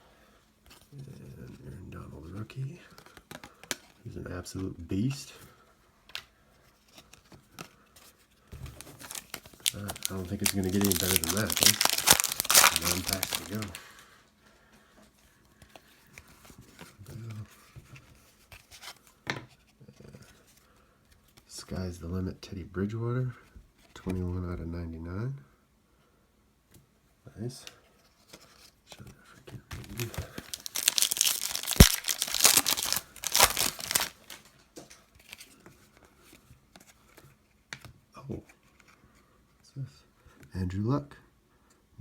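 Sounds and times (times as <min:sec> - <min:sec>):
cards rubbing and sliding: 0:08.6 - 0:13.9, 0:29.8 - 0:34.4.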